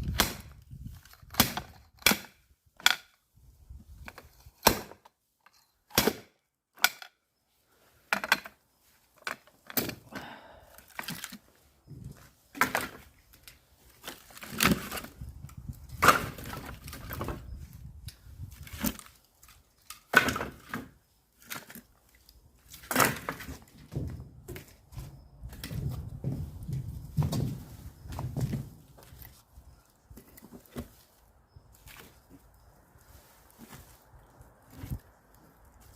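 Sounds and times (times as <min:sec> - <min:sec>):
axe chopping firewood: 0:00.0 - 0:03.1, 0:04.5 - 0:05.1, 0:05.9 - 0:07.1, 0:15.9 - 0:17.3, 0:22.8 - 0:24.0.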